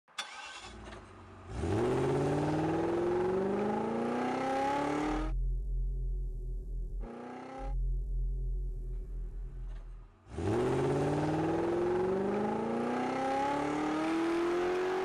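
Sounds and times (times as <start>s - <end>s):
car engine accelerating: 0.2s - 15.0s
low hum: 4.6s - 12.4s.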